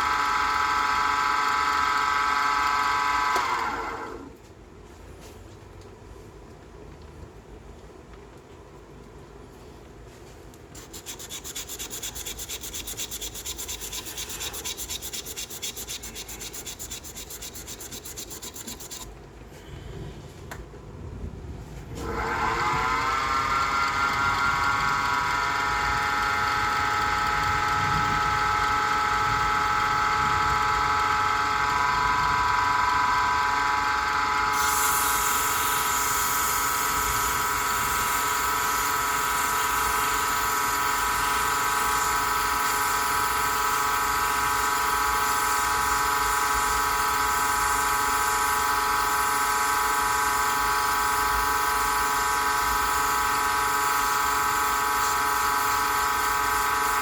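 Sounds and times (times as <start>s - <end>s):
wood lathe motor whine: 0.0s - 4.3s, 10.8s - 19.0s, 22.0s - 57.0s
bright hiss: 34.6s - 40.5s.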